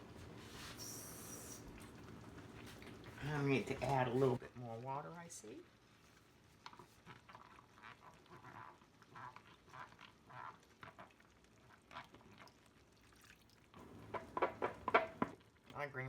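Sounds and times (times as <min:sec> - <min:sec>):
thick sauce bubbling in a wok: 0:05.4 - 0:15.8.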